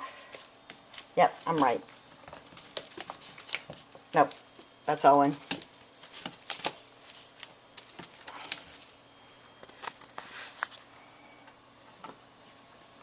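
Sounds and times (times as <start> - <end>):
kitten paws and claws scrabbling: 0.0 - 10.8
soft rustles: 0.0 - 10.9.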